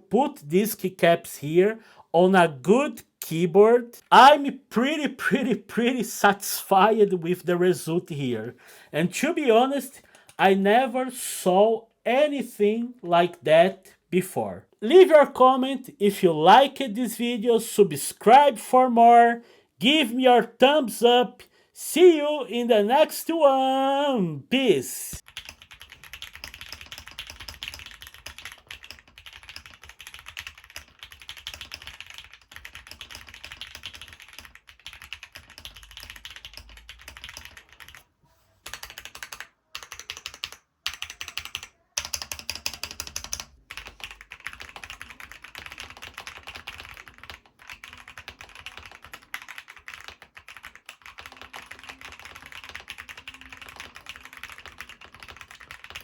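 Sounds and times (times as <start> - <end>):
fast typing on mechanical keyboard: 25.2 - 38.0, 38.6 - 56.0.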